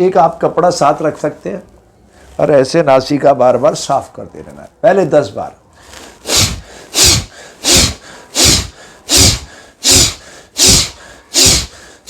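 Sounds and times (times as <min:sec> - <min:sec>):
man blowing out through nose: 0:06.2 - 0:12.0.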